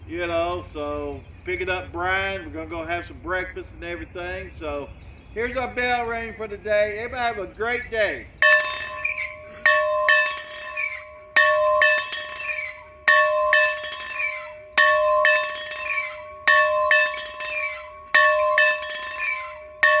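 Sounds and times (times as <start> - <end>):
bell ringing: 8.4 - 20.0.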